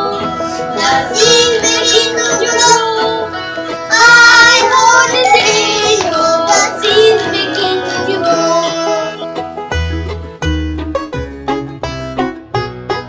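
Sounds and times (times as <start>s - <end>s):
child singing: 0.0s - 3.3s, 3.9s - 9.2s
plucked string backing: 0.0s - 13.0s.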